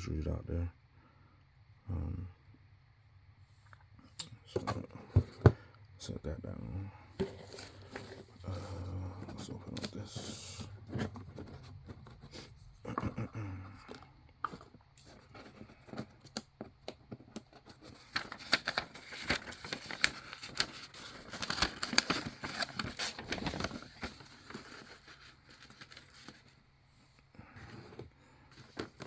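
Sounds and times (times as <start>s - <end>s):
packaging tearing and crinkling: 17.6s - 26.5s.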